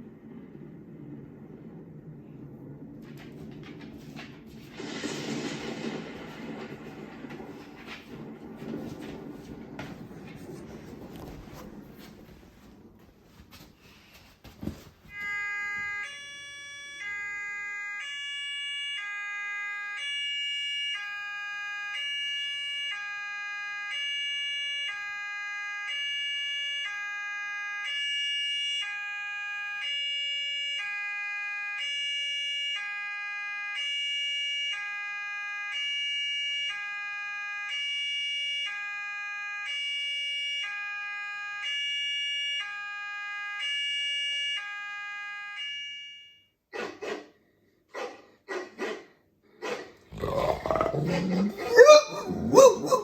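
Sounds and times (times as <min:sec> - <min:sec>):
two-tone hi-lo siren: 0:15.1 - 0:46.7.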